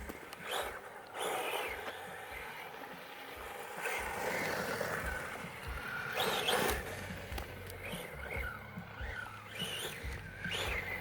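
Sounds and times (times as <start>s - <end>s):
electric motor whining: 0.0s - 11.0s.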